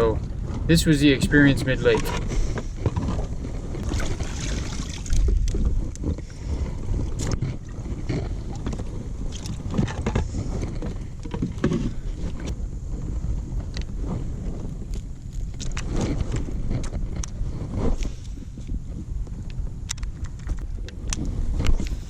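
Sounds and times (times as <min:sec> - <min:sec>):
wind buffeting microphone: 0:00.0 - 0:22.0
water sounds: 0:00.7 - 0:06.0.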